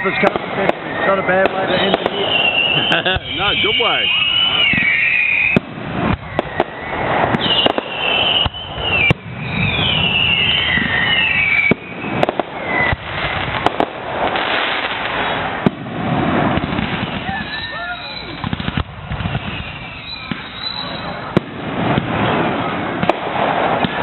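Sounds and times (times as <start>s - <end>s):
fireworks bangs: 0.0s - 24.0s
fireworks crackling: 0.0s - 24.0s
high wavering squeals: 0.9s - 5.6s, 19.4s - 21.3s.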